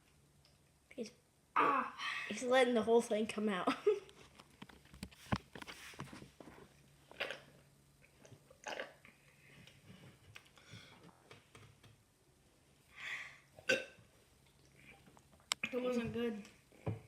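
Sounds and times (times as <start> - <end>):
boy attempting to burp: 7.1 - 7.5, 8.6 - 9.0, 13.6 - 14.0.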